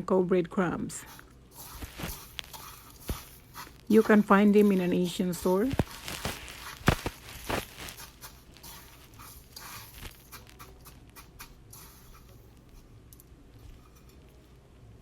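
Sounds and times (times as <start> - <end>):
crumbly scratching in breadcrumbs: 1.1 - 12.9.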